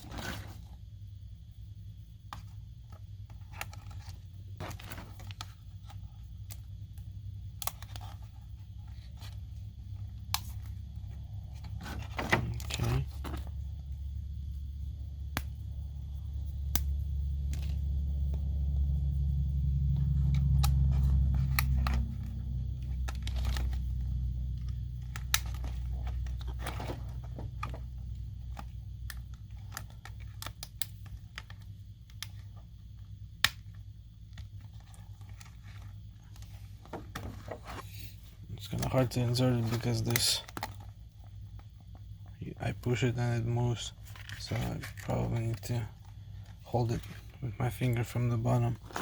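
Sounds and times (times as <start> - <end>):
low rumble: 0.0 - 30.4.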